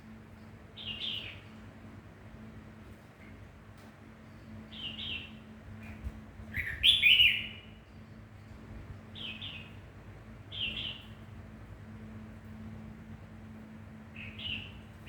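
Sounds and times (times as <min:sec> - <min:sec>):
bird chirping: 0:00.8 - 0:01.5, 0:04.7 - 0:05.4, 0:06.6 - 0:07.8, 0:09.1 - 0:09.8, 0:10.5 - 0:11.2, 0:14.2 - 0:14.9.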